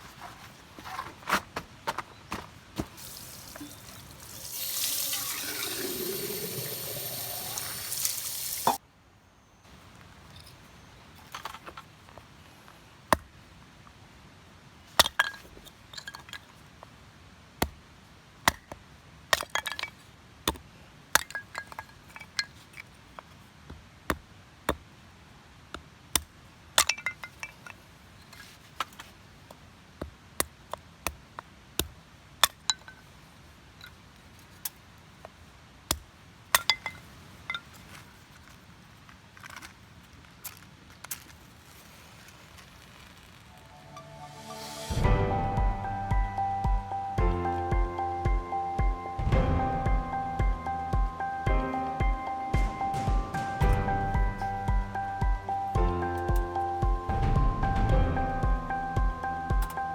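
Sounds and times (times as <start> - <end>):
water pouring: 2.9 - 8.8.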